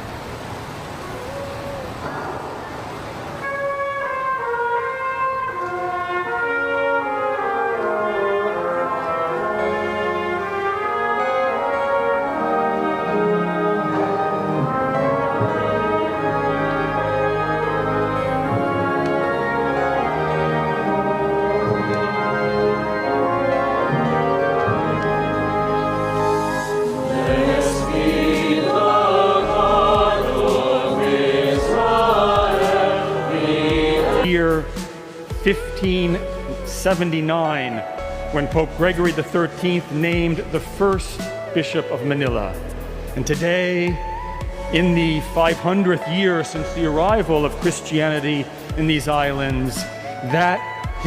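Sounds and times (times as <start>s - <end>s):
sustained organ tones: 2.0s - 40.7s
slow brass and orchestra music: 3.0s - 51.0s
choir singing a hymn: 7.3s - 35.4s.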